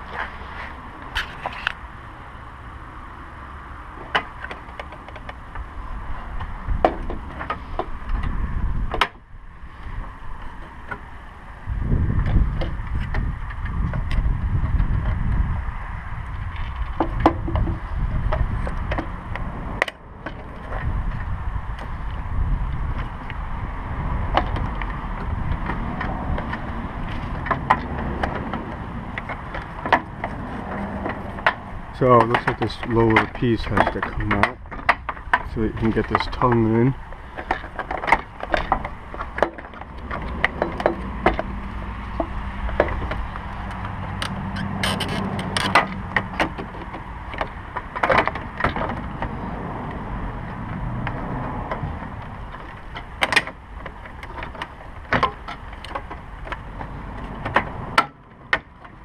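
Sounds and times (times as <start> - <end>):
hard plastic clicks and knocks: 32.2 - 36.8.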